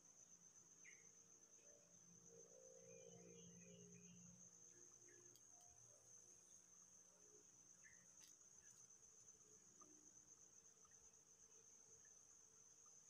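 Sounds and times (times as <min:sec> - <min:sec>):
high-pitched insect trill: 0:00.0 - 0:13.0
faint click: 0:05.3 - 0:05.8.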